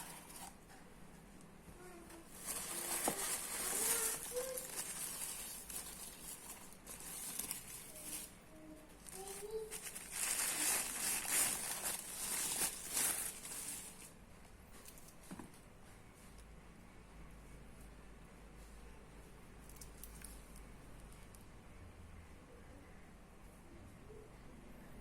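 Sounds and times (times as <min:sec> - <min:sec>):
plastic packaging crinkling: 0:02.3 - 0:08.4, 0:09.0 - 0:14.2.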